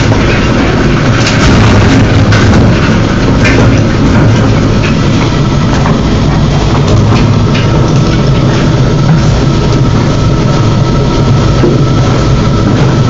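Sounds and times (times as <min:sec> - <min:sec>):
sharp knocks and clatter: 0:00.0 - 0:10.0.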